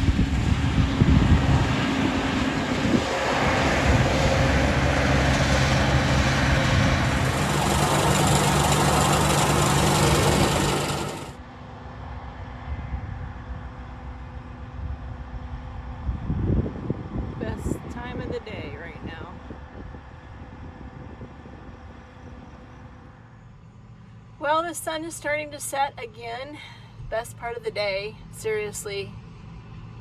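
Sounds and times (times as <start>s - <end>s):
vehicle engine running: 0.0s - 11.4s.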